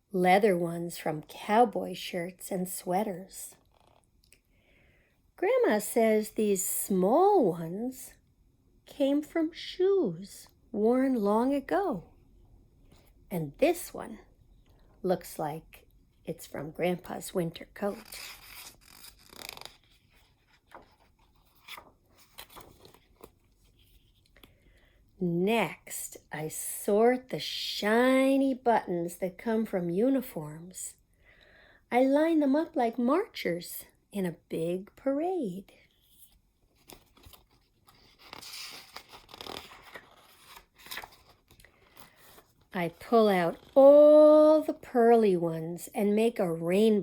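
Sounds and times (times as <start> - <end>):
paper page turning: 17.9 - 24.3, 36.2 - 43.8
rustling handling noise: 19.8 - 24.4.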